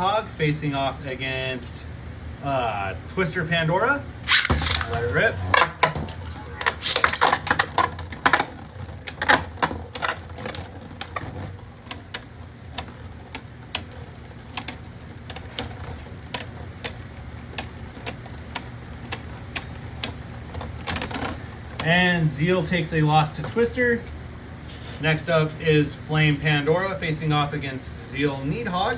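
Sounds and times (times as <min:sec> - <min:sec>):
spinning tops clashing clicks: 0:04.3 - 0:22.0.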